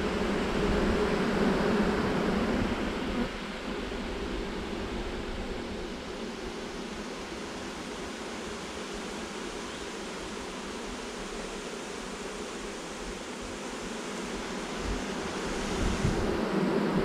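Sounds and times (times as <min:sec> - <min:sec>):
bee swarm humming: 0:00.0 - 0:17.0.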